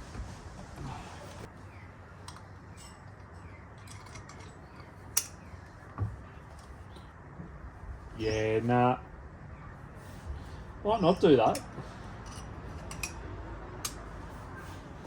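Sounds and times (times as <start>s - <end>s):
hand tools clicking and tapping: 11.4s - 13.2s.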